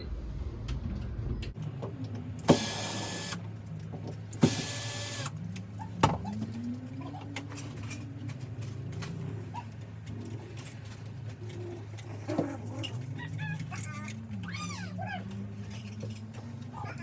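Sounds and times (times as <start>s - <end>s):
cordless drill whirring: 2.5s - 3.4s, 4.4s - 5.3s.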